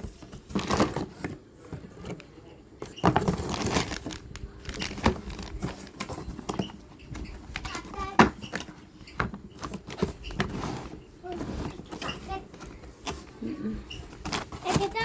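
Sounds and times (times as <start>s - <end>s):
plastic and cardboard rustling: 0.0s - 15.0s.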